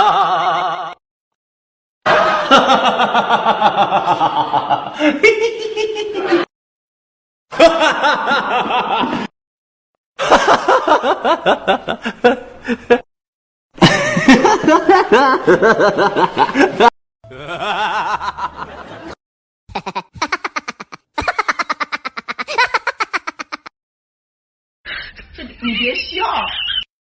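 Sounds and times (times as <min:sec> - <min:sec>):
people chuckling and snickering: 0:02.1 - 0:06.5, 0:13.8 - 0:23.7.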